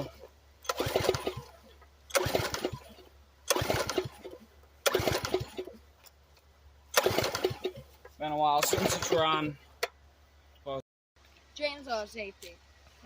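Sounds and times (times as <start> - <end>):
chainsaw starter cord pulls: 0.0 - 5.8, 6.9 - 7.8, 8.6 - 9.4.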